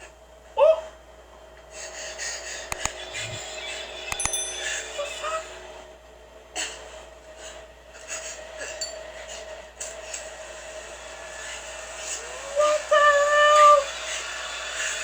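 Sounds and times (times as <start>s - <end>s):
low steady held tone: 4.1s - 5.4s.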